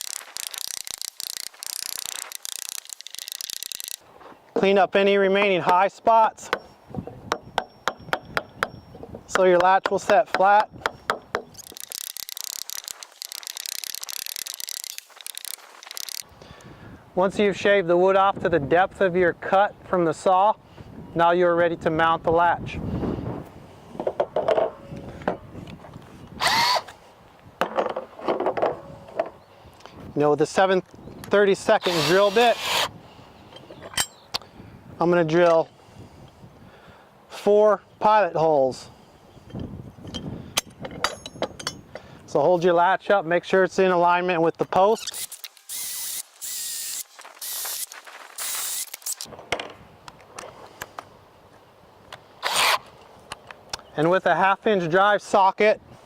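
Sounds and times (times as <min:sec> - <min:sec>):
power drill whine: 0:26.4 - 0:26.9, 0:31.8 - 0:32.9, 0:45.0 - 0:49.3.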